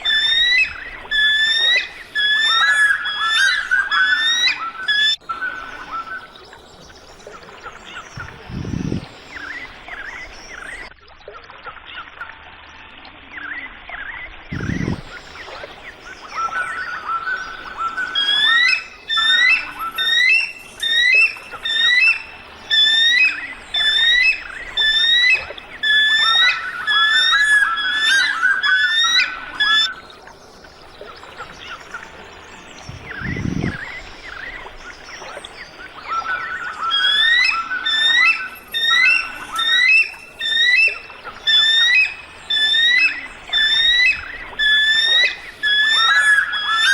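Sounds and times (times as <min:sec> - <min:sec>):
eagle calling high piping notes: 0:00.0 - 0:06.3, 0:14.5 - 0:30.0, 0:32.9 - 0:34.7, 0:35.9 - 0:46.9
short low thumps: 0:08.2 - 0:09.1
bird chirps: 0:14.5 - 0:46.9.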